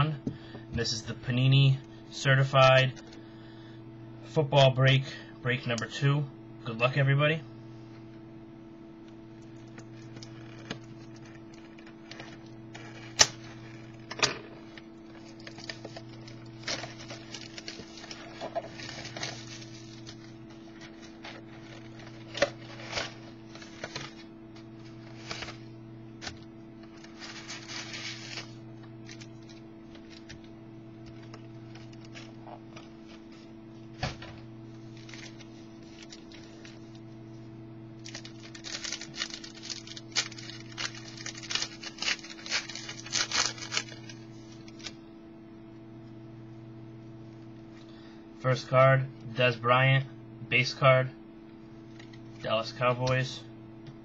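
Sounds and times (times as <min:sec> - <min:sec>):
steady low hum: 0:00.0 - 0:54.0
card packs crinkling and clicking: 0:09.5 - 0:33.2, 0:34.9 - 0:37.0, 0:38.0 - 0:45.0.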